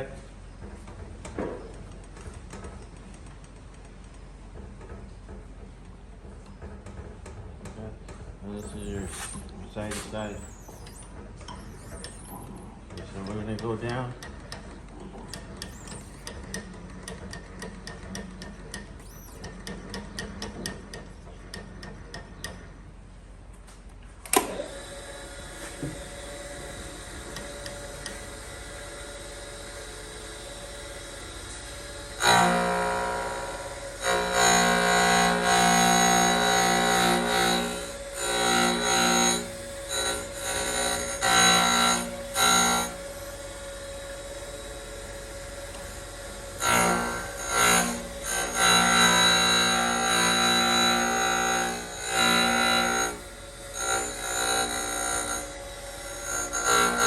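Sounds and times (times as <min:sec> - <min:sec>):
motor humming: 0:06.2 - 0:23.0, 0:24.2 - 0:57.0
grinding wheel screeching on metal: 0:08.4 - 0:21.0, 0:25.6 - 0:57.0.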